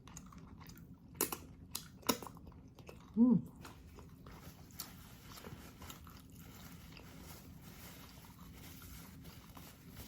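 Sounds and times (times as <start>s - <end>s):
chewing food: 0.0s - 10.0s.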